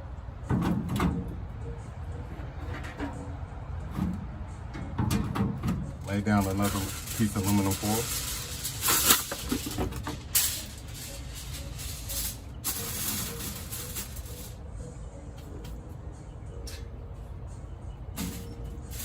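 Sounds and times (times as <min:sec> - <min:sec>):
aluminum foil crinkling: 0:06.2 - 0:14.5.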